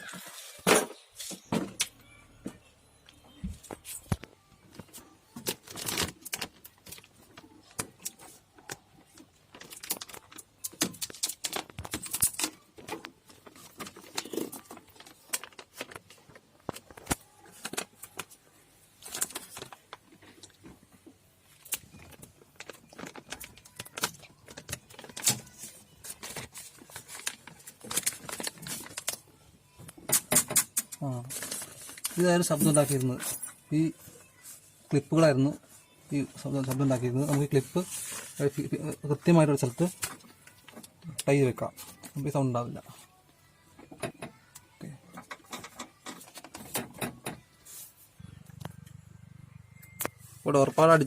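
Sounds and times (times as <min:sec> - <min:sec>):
plastic and metal parts rattling: 0:04.1 - 0:18.4, 0:21.6 - 0:33.6, 0:43.8 - 0:47.5.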